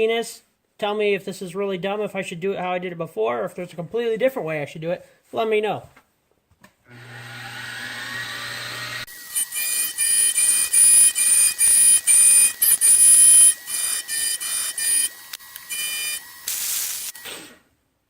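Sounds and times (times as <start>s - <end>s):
milling spindle whine: 7.9s - 17.3s
cutter screeching into metal: 9.1s - 17.6s.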